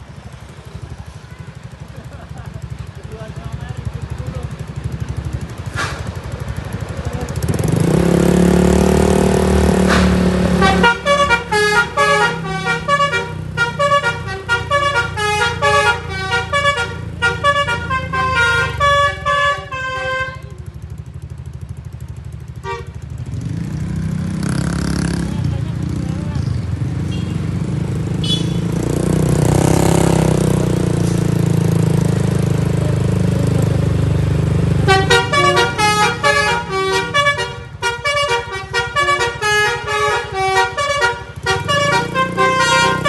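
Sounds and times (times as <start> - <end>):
bus engine running: 0.0 - 43.0
loud low sustained horn tone: 8.8 - 20.7, 34.8 - 43.0
bus horn melody: 9.7 - 20.7, 22.6 - 23.1, 28.2 - 28.7, 34.8 - 43.0.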